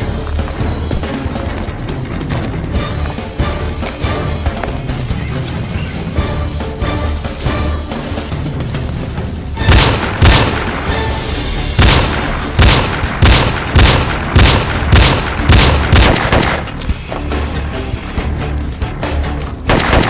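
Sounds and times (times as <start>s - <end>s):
background music: 0.0s - 20.0s
gunshot sound effects: 9.6s - 10.7s, 11.8s - 16.6s.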